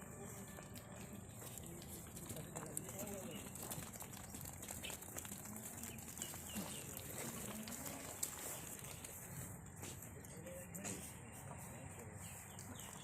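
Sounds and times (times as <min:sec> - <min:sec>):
bird chirps: 0:12.2 - 0:13.0.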